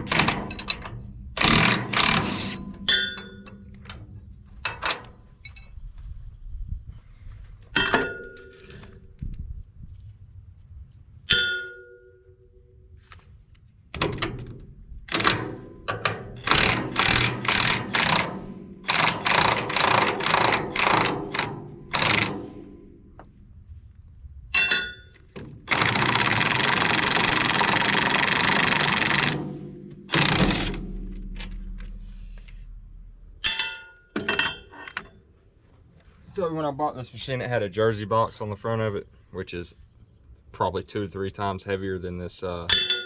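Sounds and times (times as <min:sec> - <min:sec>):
metal tool clinking: 0:02.4 - 0:03.6, 0:24.6 - 0:25.2, 0:33.4 - 0:35.2, 0:42.7 - 0:43.0
metal knocks: 0:29.1 - 0:35.2.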